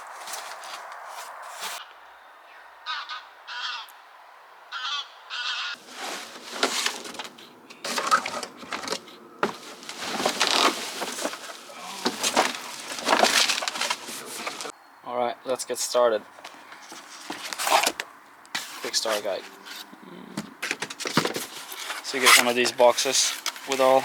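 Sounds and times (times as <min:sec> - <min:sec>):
raspy squeaks: 0:05.4 - 0:14.7, 0:21.4 - 0:24.0
cardboard ripping and rustling: 0:05.8 - 0:14.7, 0:16.9 - 0:18.0, 0:20.6 - 0:24.0.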